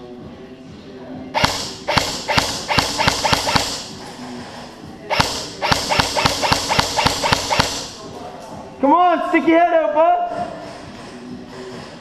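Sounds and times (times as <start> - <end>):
airsoft gun shots: 1.4 - 4.0, 5.1 - 8.0.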